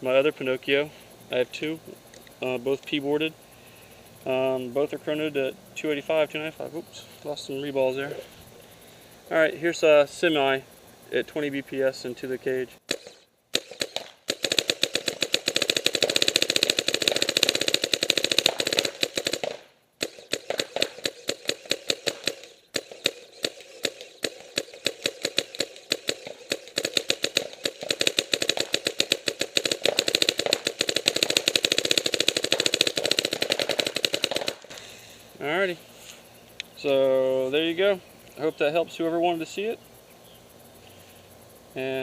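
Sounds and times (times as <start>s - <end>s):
paintball marker firing rapidly: 12.9s - 34.9s.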